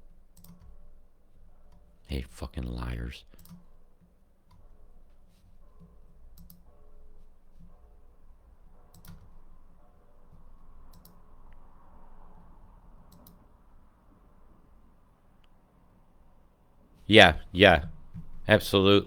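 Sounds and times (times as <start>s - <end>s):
faint low hum: 0.0s - 19.0s
computer mouse clicking: 0.3s - 1.0s, 3.3s - 7.9s, 8.8s - 9.6s, 10.3s - 11.6s, 13.1s - 13.5s.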